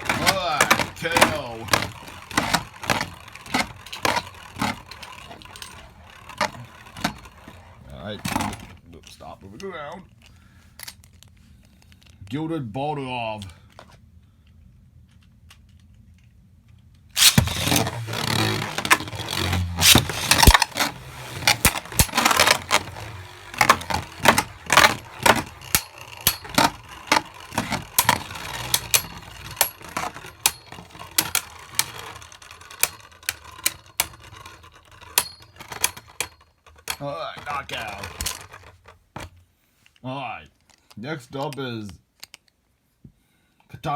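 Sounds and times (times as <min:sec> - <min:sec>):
spinning tops clashing plastic clacks: 0:00.0 - 0:08.6, 0:17.2 - 0:38.9
spinning tops launched: 0:17.2 - 0:34.2.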